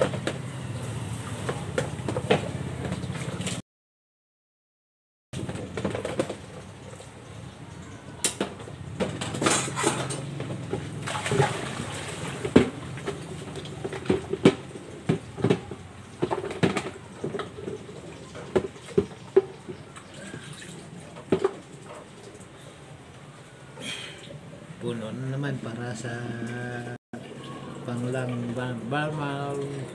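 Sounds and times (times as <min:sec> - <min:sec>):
splashing water: 0:06.3 - 0:24.5, 0:27.2 - 0:29.9
dishes clinking and clattering: 0:08.3 - 0:11.6.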